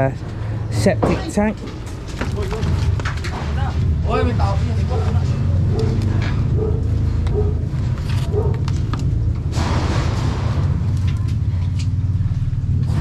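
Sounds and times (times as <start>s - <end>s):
construction knocks: 0.8s - 5.2s.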